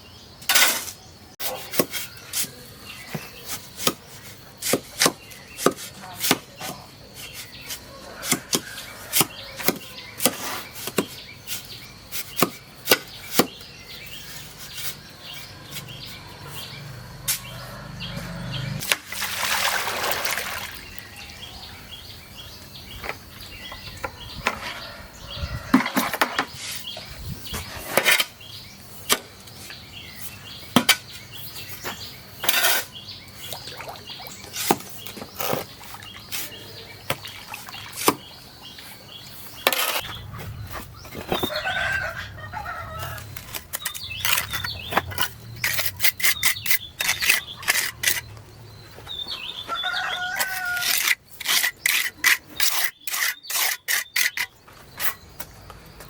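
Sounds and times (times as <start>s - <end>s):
clatter of wood and cookware: 25.7s - 26.6s.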